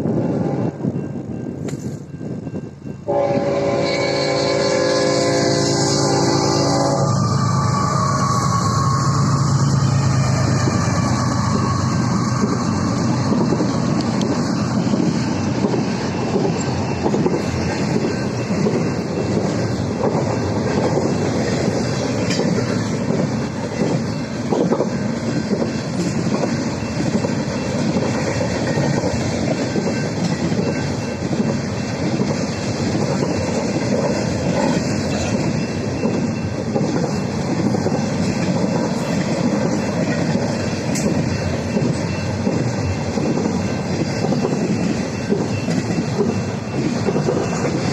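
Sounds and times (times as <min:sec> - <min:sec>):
freight train rumbling: 0:00.0 - 0:47.9
wheels clacking over rail joints: 0:10.4 - 0:47.9.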